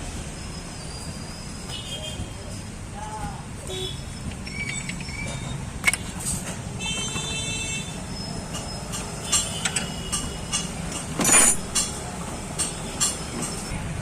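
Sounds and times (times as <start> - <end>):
hand tools clinking on engine: 4.3 - 7.3, 8.4 - 13.7.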